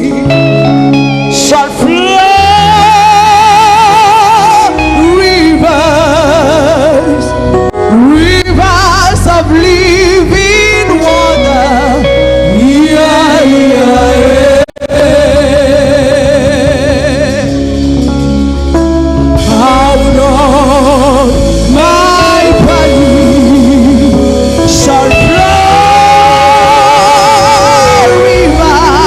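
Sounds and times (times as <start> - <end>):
person singing with vibrato: 0.0 - 18.6, 19.4 - 29.0
held chords and bass: 0.0 - 29.0.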